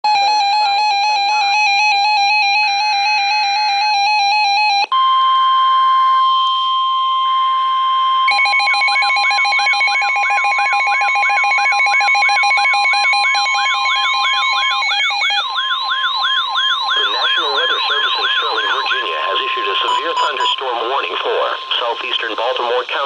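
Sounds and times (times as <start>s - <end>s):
steady warning alarm tone: 0.1s - 23.0s
wailing warble: 7.2s - 22.8s
rapid beeping: 8.3s - 23.0s
stepped electronic tone pattern: 8.3s - 23.0s.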